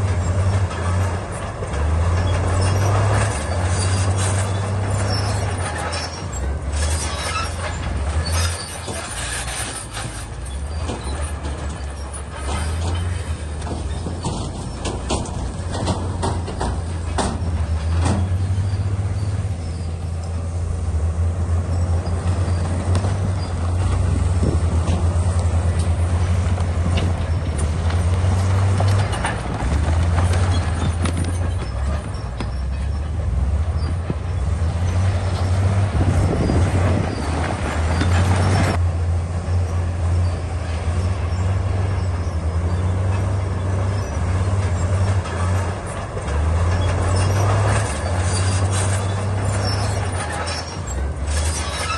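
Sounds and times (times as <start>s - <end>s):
harsh scraping rush: 0.0s - 38.8s, 40.1s - 51.9s
bulldozer diesel engine: 0.0s - 51.9s
tracks clattering on stone: 1.7s - 18.6s, 22.2s - 33.2s.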